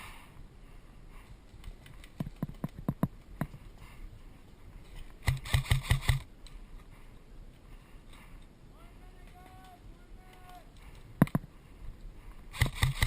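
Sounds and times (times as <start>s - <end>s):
airsoft gun shots: 12.5s - 13.0s.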